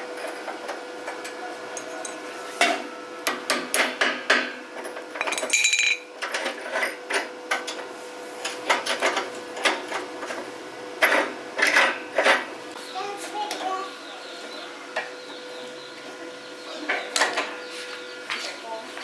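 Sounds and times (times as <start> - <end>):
hand tools knocking on metal: 3.3 - 6.0.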